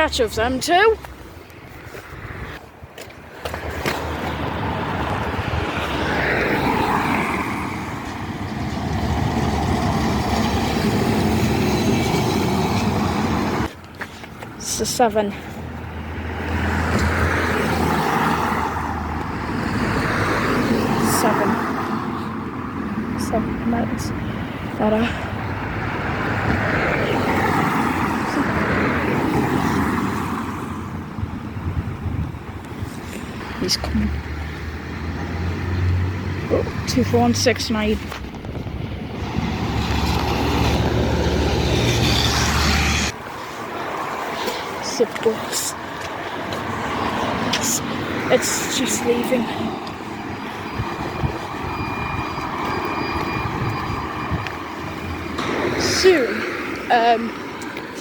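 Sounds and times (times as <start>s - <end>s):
bus passing with engine: 0.0s - 58.0s
road and tyre noise: 0.0s - 58.0s
vehicle driving past: 38.2s - 43.2s.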